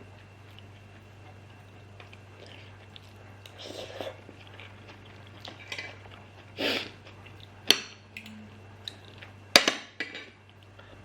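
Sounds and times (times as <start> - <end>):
cutlery scraping a plate: 5.6 - 6.0
cutlery clinking on a plate: 9.6 - 10.4.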